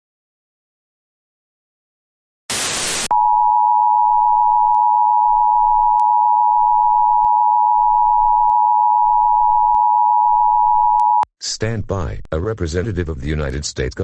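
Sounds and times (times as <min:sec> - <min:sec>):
harsh static noise: 0:02.5 - 0:03.1.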